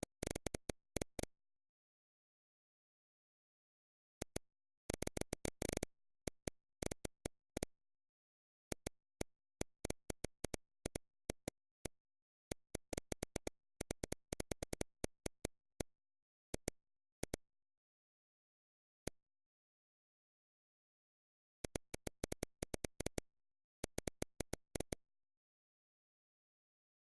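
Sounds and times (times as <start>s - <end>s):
sharp irregular clicks: 0.0s - 1.3s, 4.2s - 7.8s, 8.5s - 17.5s, 21.6s - 25.0s.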